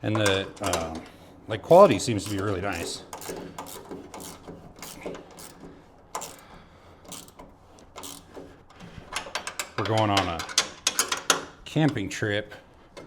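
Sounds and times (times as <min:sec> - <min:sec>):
hand ratchet clicking: 0:01.7 - 0:08.5.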